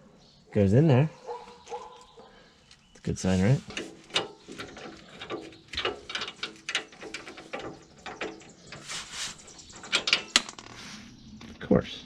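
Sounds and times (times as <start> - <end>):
metal tools clicking and clinking: 3.7 - 10.7.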